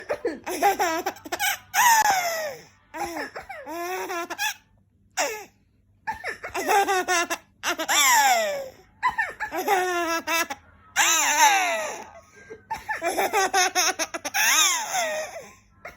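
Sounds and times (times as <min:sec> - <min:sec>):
baby laughing: 0:06.5 - 0:08.7, 0:09.4 - 0:12.1, 0:12.7 - 0:15.5.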